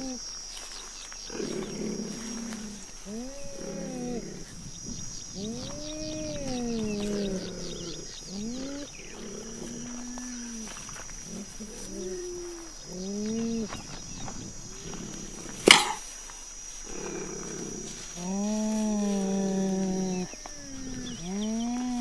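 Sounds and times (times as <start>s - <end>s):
big cat calling: 1.3s - 13.9s, 14.7s - 16.0s, 16.8s - 22.0s
sharp click: 15.6s - 16.0s.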